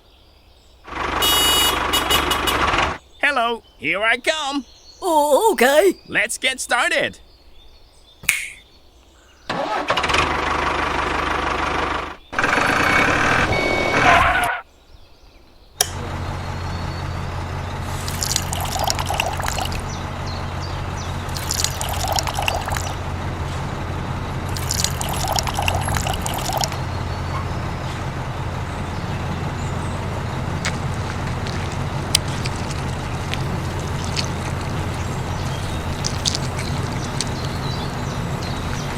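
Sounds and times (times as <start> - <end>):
liquid pouring: 18.0 - 19.8, 21.3 - 22.9, 24.5 - 26.8, 30.5 - 37.8.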